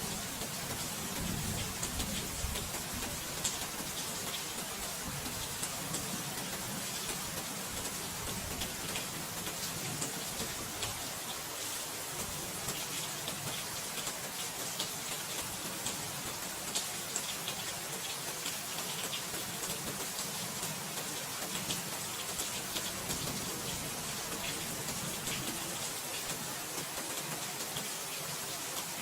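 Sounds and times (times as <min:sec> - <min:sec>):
raindrops ticking: 0:00.0 - 0:11.0, 0:12.2 - 0:28.0
steady rain hiss: 0:00.0 - 0:29.0.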